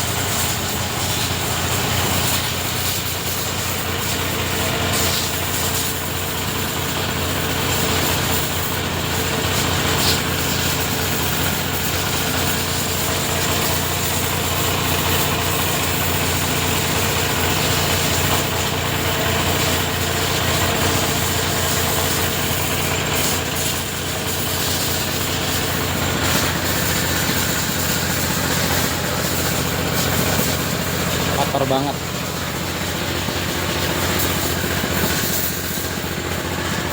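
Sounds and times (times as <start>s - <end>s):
pressure washer spraying: 0.0s - 36.9s.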